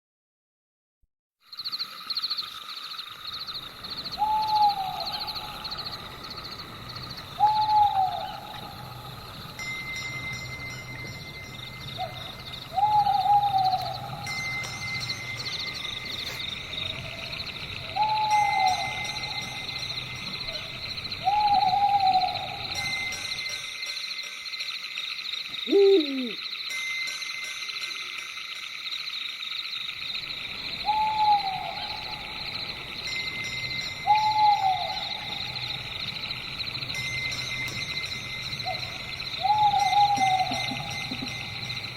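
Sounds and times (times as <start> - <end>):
crickets trilling: 1.4 - 41.9
owl hooting: 4.1 - 6.1, 7.1 - 9.2, 12.0 - 14.4, 16.2 - 19.8, 20.4 - 23.0, 25.5 - 26.5, 30.7 - 32.4, 34.0 - 35.9, 38.6 - 41.4.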